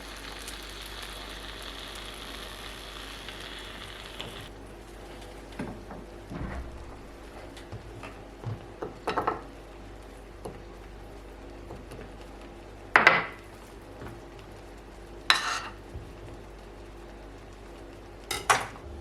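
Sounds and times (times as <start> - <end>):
dishes clinking and knocking: 8.4 - 9.5, 18.3 - 18.8.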